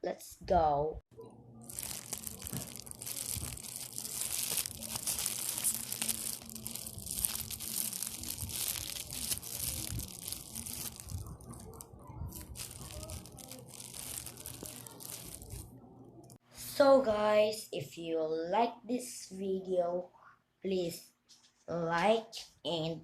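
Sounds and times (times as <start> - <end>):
squishy toys crinkling: 1.6 - 15.7.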